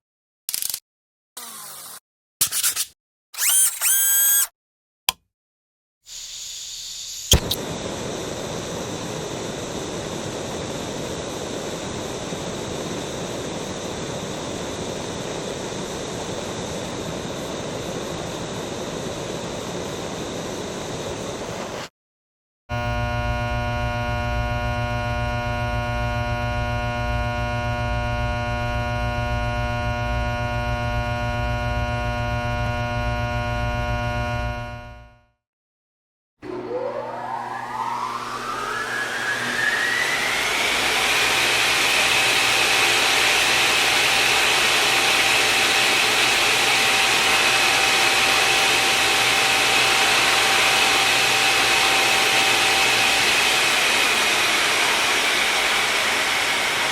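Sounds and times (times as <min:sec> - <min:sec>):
electric buzzing hum: 0:22.7 - 0:35.2
machine rushing noise: 0:36.4 - 0:56.9.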